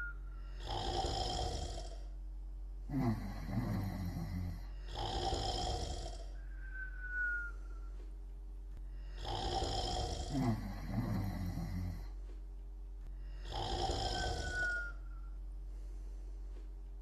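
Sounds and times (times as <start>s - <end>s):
person snoring: 0.4s - 2.1s, 2.9s - 6.5s, 8.9s - 12.2s, 13.2s - 15.0s.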